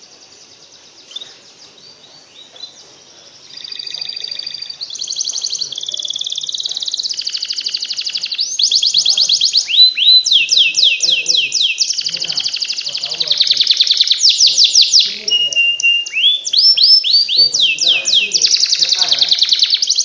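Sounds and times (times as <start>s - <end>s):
canary singing trills: 0.0s - 20.0s.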